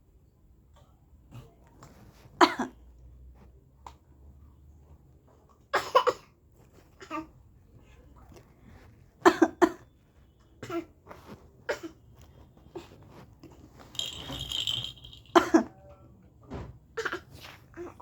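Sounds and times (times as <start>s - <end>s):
adult coughing playfully: 2.4s - 2.8s, 5.8s - 6.3s, 15.3s - 15.7s
baby coughing: 2.4s - 2.8s, 5.7s - 6.4s, 7.0s - 7.3s, 10.6s - 10.9s, 11.7s - 12.0s, 15.2s - 15.7s, 17.0s - 17.4s.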